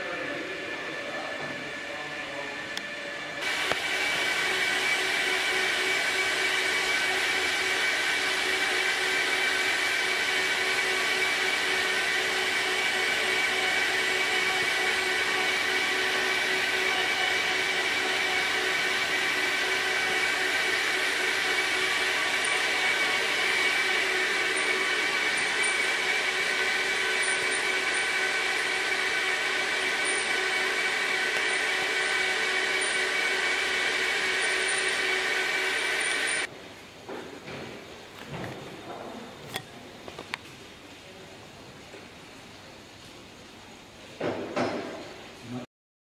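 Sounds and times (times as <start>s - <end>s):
machine rushing with whine: 0.0s - 36.5s.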